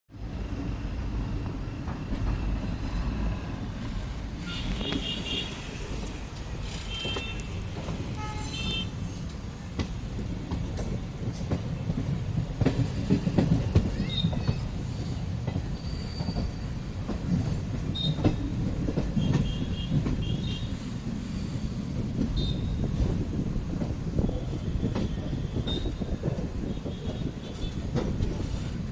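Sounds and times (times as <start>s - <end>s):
train wheels rumbling on rails: 0.1s - 28.9s
rail clicks: 0.3s - 28.9s
metal squeals: 15.8s - 16.7s.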